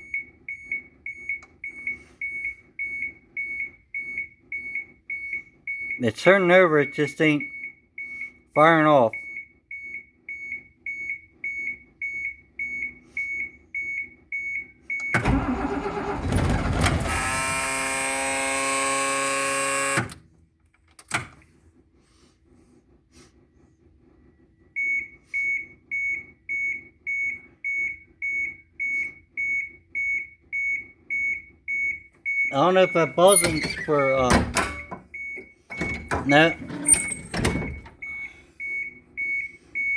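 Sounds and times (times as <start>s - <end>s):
warning buzzer beeping: 5.8s - 7.6s, 8.6s - 9.2s, 16.9s - 20.1s, 32.3s - 39.9s
diesel engine cranking on starter: 14.9s - 20.3s, 32.6s - 39.9s.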